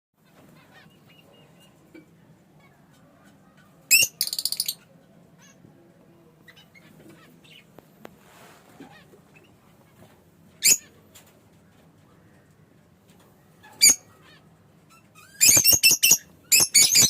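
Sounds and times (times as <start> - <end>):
lovebirds chirping softly: 0.2 - 5.6, 6.4 - 8.0
harsh bird chattering: 3.7 - 5.6.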